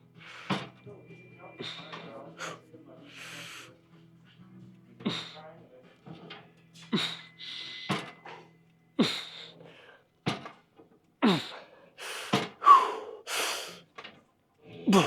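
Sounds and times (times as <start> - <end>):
man grunting and exhaling: 11.2 - 11.6, 14.8 - 15.0
man gasping breaths: 11.2 - 13.9, 14.7 - 15.0.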